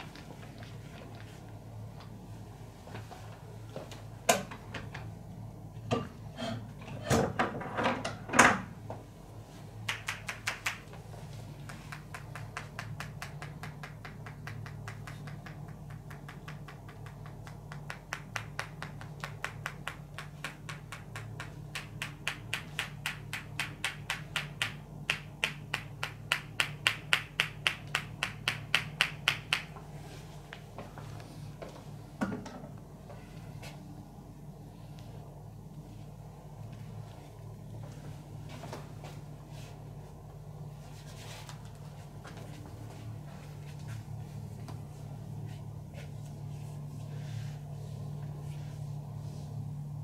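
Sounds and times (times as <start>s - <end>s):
hands slapping body: 9.9s - 11.0s, 11.6s - 29.8s.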